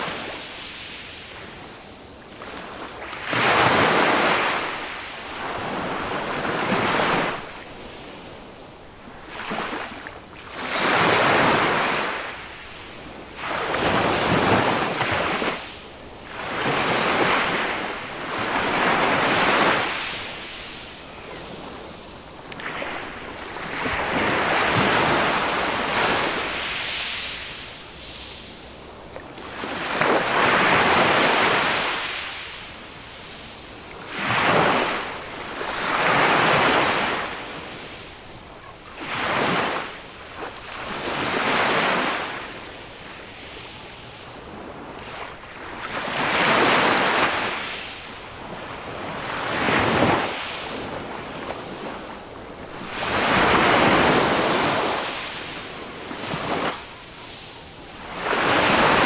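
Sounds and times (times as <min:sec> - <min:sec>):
small waves washing up a beach: 0:00.0 - 0:59.0.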